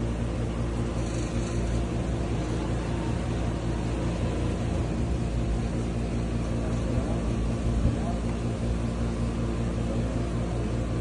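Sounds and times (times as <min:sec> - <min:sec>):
small motor humming: 0:00.8 - 0:04.1.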